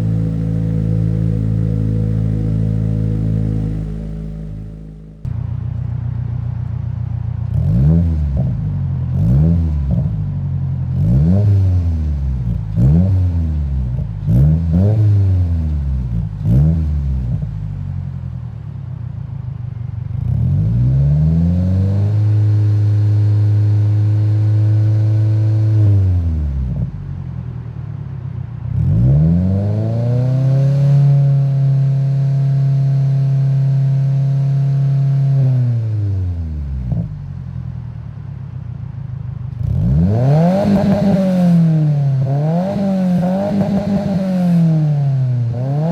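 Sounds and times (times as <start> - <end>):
car engine revving: 0.0 - 6.0, 7.4 - 17.8, 39.5 - 45.9.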